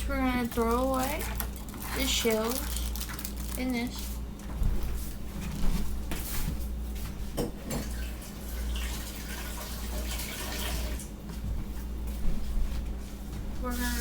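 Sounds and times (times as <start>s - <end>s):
tap water running into sink: 7.8s - 11.1s.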